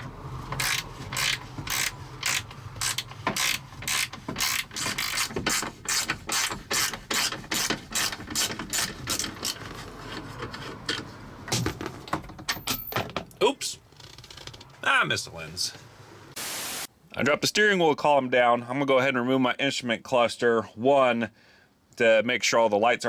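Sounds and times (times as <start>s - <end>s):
socket ratchet clicking: 0.6s - 5.3s.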